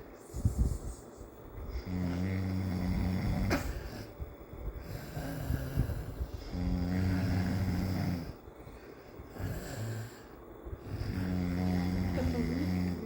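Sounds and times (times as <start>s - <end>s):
soft breath: 0.0s - 2.1s, 8.2s - 11.4s
man snoring heavily: 1.8s - 4.1s, 4.8s - 8.4s, 9.3s - 13.0s.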